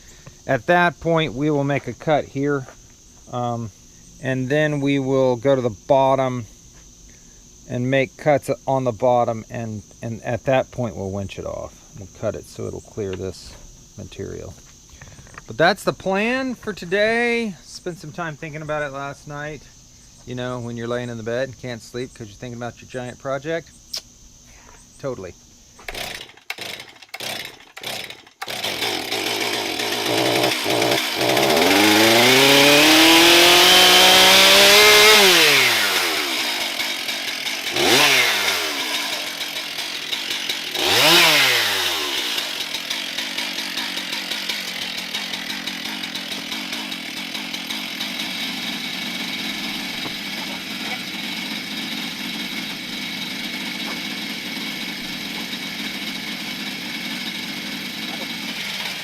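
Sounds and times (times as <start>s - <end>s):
chainsaw engine revving: 25.8s - 59.0s.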